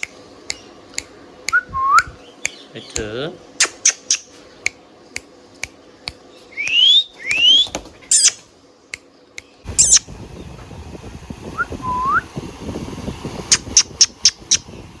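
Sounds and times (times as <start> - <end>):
parrot whistling: 3.6 - 4.4, 6.5 - 8.4, 9.7 - 10.1.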